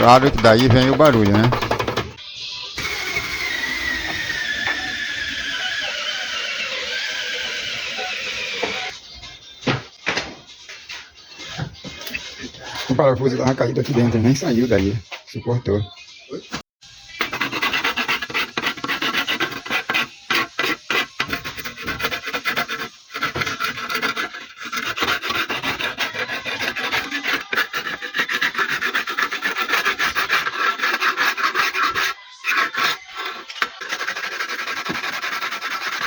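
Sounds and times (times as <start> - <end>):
hand sanding metal part: 0.0 - 2.1, 2.8 - 8.9, 17.2 - 36.0.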